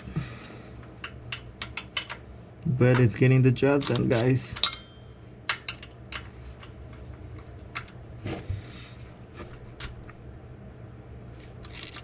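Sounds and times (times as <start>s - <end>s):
hand tools clicking and tapping metal: 0.8s - 2.2s, 3.8s - 7.0s.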